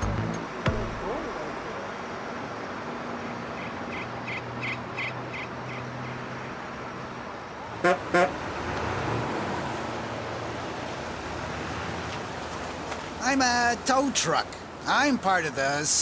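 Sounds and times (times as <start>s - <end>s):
vehicle horn honking: 7.8s - 8.4s.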